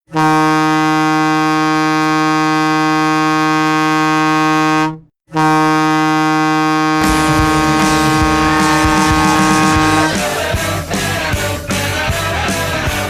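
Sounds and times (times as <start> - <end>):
deep goal horn blast: 0.1 - 10.4.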